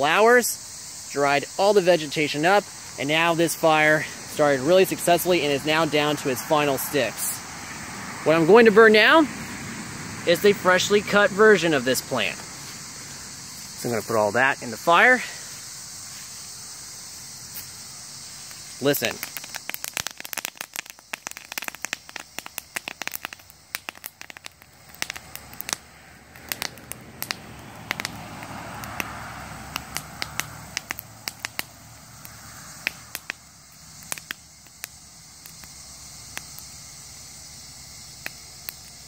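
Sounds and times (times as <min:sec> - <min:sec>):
campfire popping and crackling: 0:00.0 - 0:39.0
soft hiss of fire: 0:00.0 - 0:39.0.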